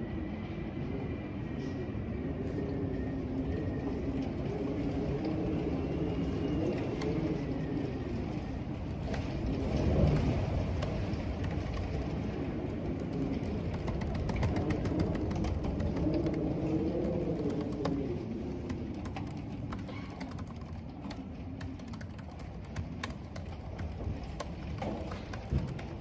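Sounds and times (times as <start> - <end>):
wind howling: 0.0 - 26.0
keyboard typing: 13.5 - 26.0.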